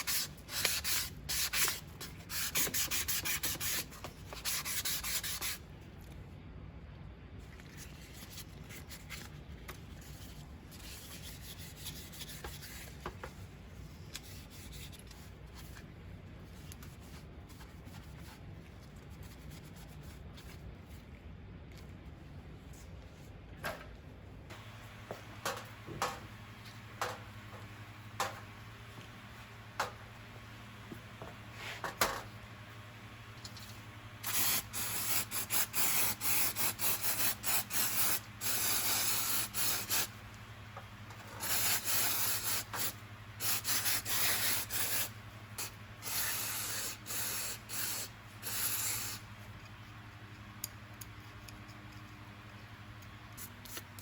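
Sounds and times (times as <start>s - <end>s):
spray paint can hissing: 34.2s - 40.2s, 41.4s - 49.2s.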